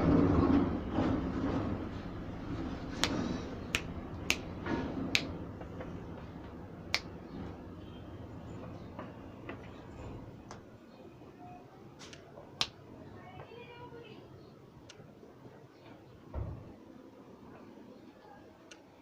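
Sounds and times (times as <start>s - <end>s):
low background noise: 0.0s - 19.0s.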